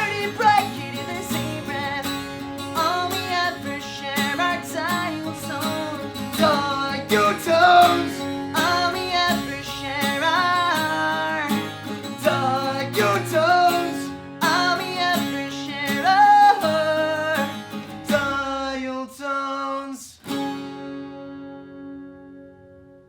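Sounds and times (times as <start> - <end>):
person singing: 0.0 - 20.2
acoustic guitars strumming: 0.0 - 23.0.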